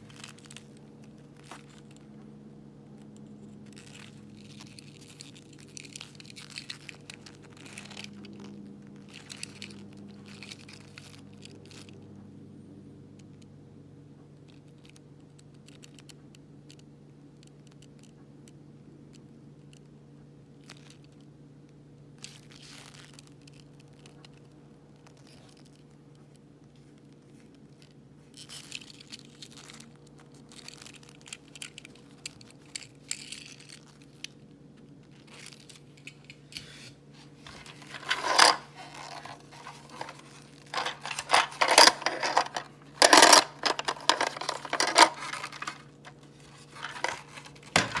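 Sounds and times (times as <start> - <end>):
cardboard and plastic crinkling: 35.2 - 48.0.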